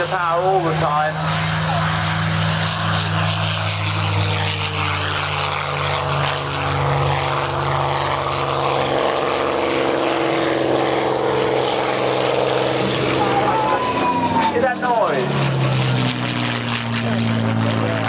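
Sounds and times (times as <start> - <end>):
propeller aircraft engine drone: 0.0 - 18.0.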